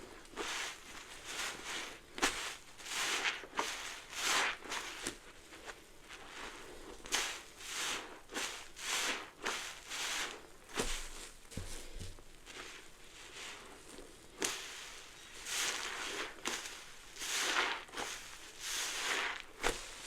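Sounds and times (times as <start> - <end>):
sponge squelching foam: 6.1 - 11.7, 14.4 - 20.0.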